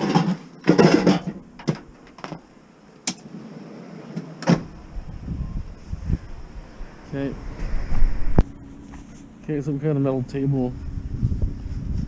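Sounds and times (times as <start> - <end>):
low rumble: 4.6 - 12.0.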